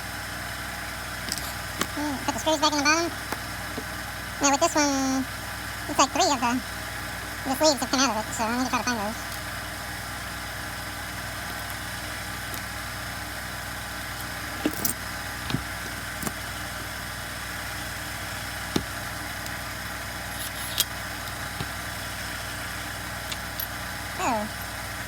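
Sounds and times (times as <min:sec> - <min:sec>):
steady background hum: 0:00.0 - 0:25.0
small parts clicking: 0:01.2 - 0:02.0, 0:20.3 - 0:21.8, 0:23.2 - 0:23.8.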